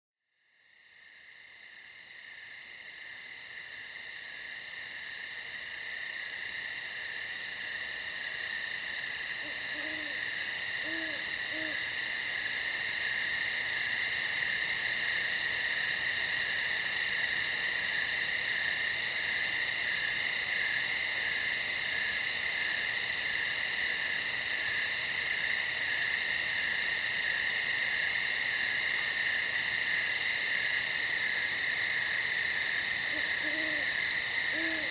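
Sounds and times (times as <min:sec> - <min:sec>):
insects trilling: 0:03.8 - 0:34.9
owl hooting softly: 0:09.4 - 0:11.9, 0:33.1 - 0:34.9.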